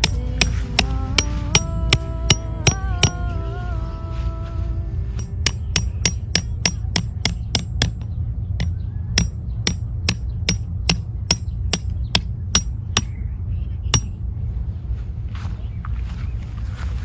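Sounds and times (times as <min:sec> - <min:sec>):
hammer striking metal tent pegs: 0:00.0 - 0:03.4, 0:05.2 - 0:13.2, 0:14.0 - 0:14.2
low rumble: 0:00.0 - 0:16.5.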